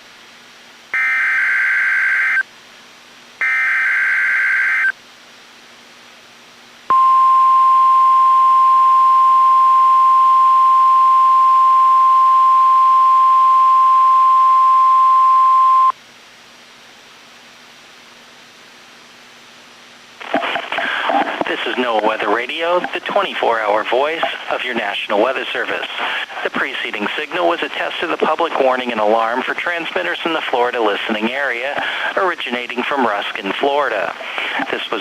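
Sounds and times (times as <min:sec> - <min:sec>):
steady warning alarm tone: 0:01.0 - 0:02.4, 0:03.4 - 0:04.9.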